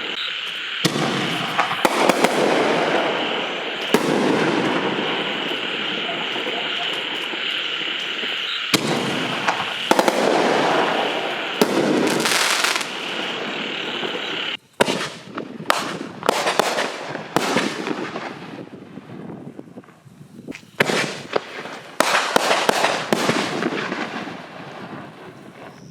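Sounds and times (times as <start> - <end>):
high whine: 0.0 - 14.6
firework shells bursting: 0.0 - 18.0
sharp bangs and pops: 0.0 - 18.3, 20.6 - 24.3
dense firework crackle: 0.0 - 25.9.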